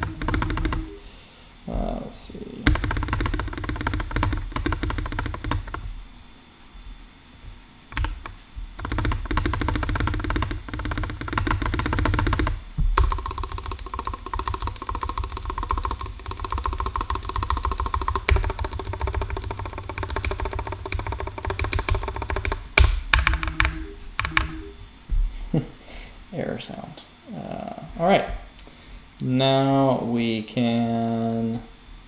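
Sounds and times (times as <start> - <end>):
mechanical keyboard keystrokes: 0.0 - 1.0, 2.6 - 5.9, 7.9 - 24.7.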